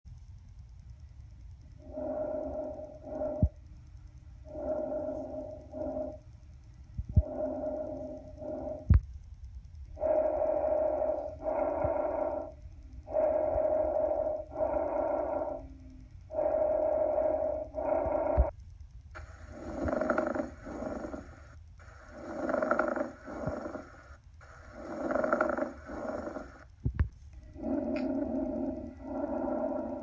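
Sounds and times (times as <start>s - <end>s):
lung breath sounds: 1.8s - 3.6s, 4.5s - 6.2s, 7.1s - 9.0s, 10.0s - 18.5s, 19.2s - 26.7s, 27.4s - 30.0s.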